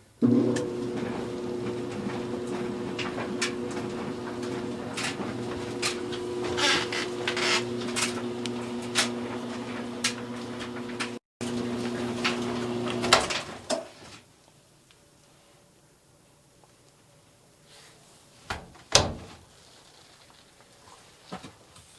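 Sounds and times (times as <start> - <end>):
clothes dryer motor hum: 0.0 - 14.2
tumbling drum knocks and clicks: 0.5 - 11.2.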